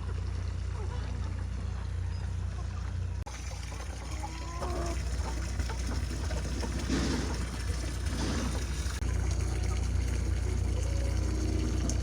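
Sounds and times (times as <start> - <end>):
chickens clucking: 0.7 - 12.0
water running from hose: 3.3 - 12.0.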